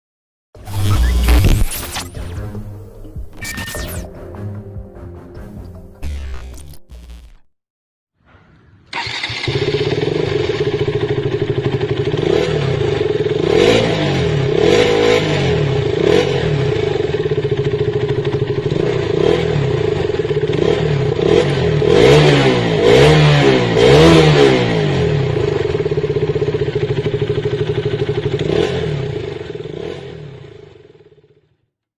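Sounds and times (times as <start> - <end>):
motorcycle engine idling and revving: 8.9 - 31.8.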